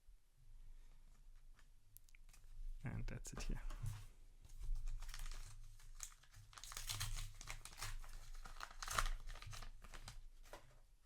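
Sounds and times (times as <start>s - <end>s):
foil wrapper crinkling and tearing: 4.8s - 10.6s.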